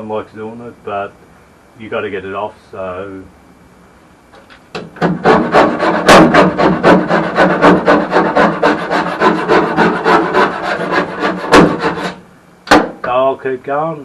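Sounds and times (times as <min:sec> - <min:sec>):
scraper blade scraping metal floor: 0:05.0 - 0:12.2.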